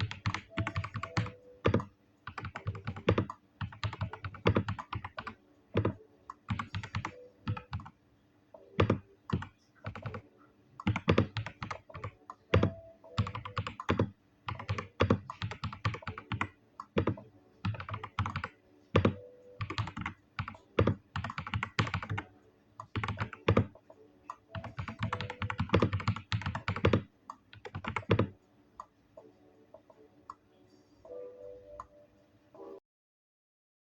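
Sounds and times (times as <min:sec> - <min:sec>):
mechanical keyboard typing: 0:00.0 - 0:08.0, 0:08.8 - 0:10.2, 0:10.8 - 0:28.4.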